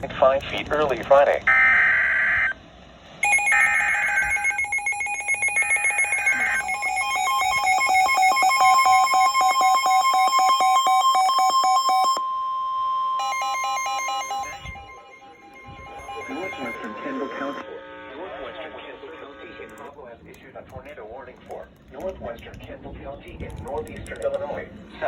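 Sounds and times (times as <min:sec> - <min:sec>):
screeching digital header bursts: 0:03.2 - 0:12.2, 0:13.2 - 0:17.6
fast electronic pulsing alert tone: 0:03.2 - 0:17.6
steady attention tone: 0:03.2 - 0:19.8
spoken warning: 0:15.7 - 0:25.0.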